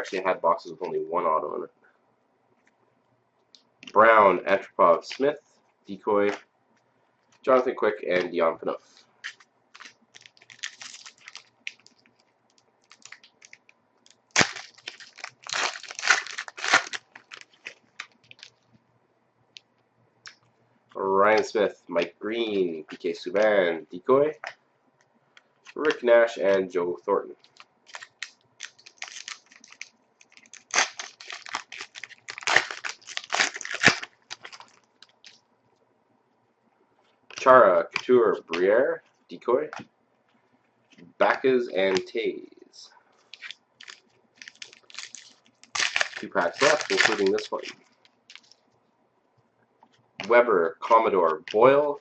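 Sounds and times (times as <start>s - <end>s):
cards clicking and rustling: 9.2s - 18.5s, 27.4s - 35.3s, 43.3s - 48.6s
card pack wrapper crinkling and tearing: 9.2s - 18.6s, 27.4s - 35.4s, 43.3s - 48.6s.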